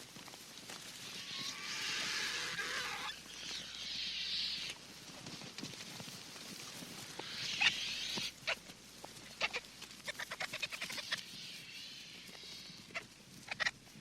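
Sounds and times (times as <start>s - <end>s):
birds warbling song: 1.0s - 4.8s, 7.0s - 8.7s, 9.3s - 13.8s.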